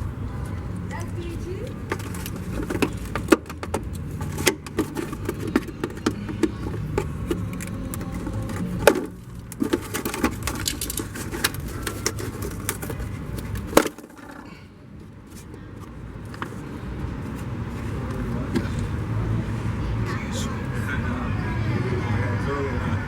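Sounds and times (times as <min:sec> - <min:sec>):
hand tools clicking and knocking: 0:00.9 - 0:18.8.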